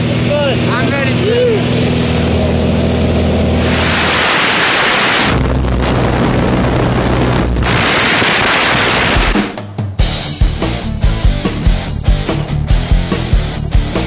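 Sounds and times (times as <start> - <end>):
plane engine droning: 0.0 - 9.4
wind rushing over microphone: 1.8 - 9.4.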